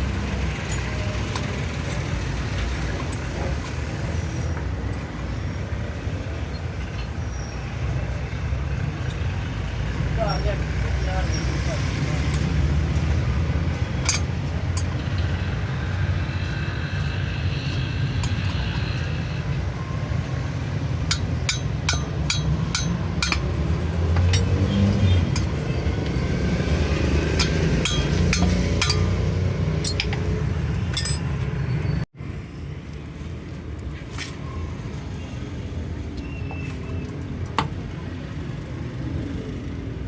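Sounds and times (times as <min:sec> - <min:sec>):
tools clinking on metal: 0:14.0 - 0:15.2, 0:21.1 - 0:26.2, 0:27.0 - 0:31.4.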